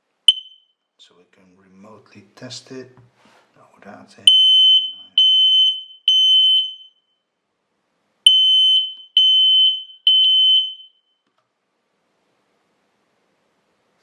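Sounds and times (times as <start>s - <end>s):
smoke alarm beeping: 0.3s - 0.8s, 4.3s - 7.2s, 8.3s - 11.2s.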